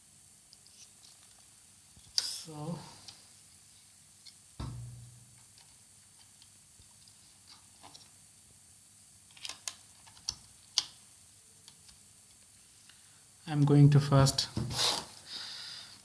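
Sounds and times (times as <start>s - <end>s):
dull knock: 4.6s - 5.2s
small screws clicking and tapping: 9.3s - 11.0s.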